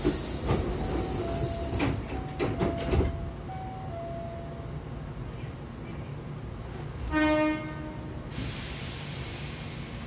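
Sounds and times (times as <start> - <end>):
air hissing from train doors: 0.0 - 3.1, 8.2 - 10.0.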